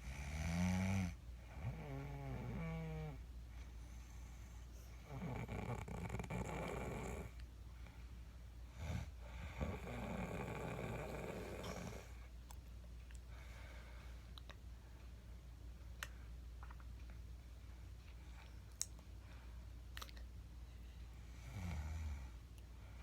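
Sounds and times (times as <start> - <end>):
woman snoring: 0.0 - 3.2, 5.0 - 7.4, 8.8 - 12.1, 21.4 - 22.3.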